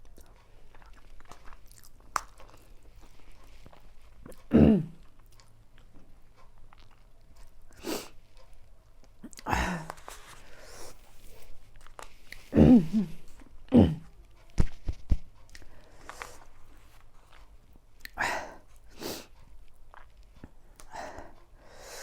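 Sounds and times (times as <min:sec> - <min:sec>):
soft chewing: 0:00.0 - 0:22.0.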